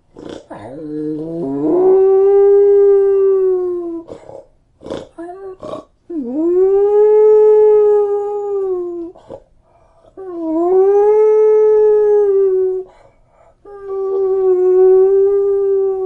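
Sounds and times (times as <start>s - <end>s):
dog howling: 0.8s - 4.1s, 10.2s - 12.9s, 13.7s - 16.0s.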